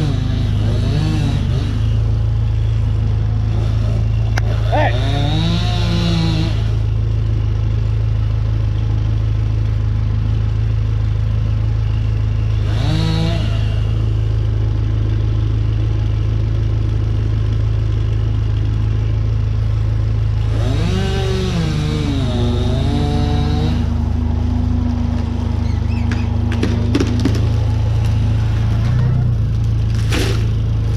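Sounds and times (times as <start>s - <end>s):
machinery engine humming: 0.0s - 30.9s.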